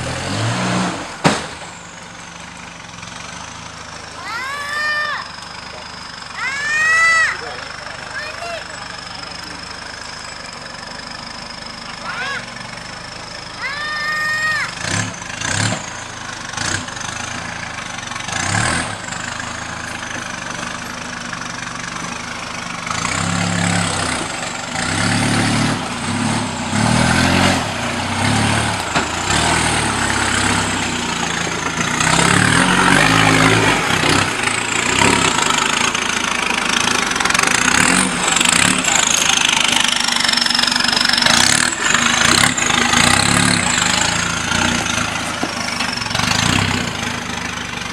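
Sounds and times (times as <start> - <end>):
off-road vehicle engine revving: 0.0 - 47.9.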